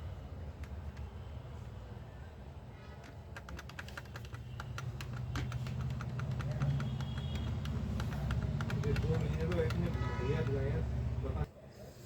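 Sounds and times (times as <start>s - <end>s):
keyboard keys tapping: 3.0s - 10.8s.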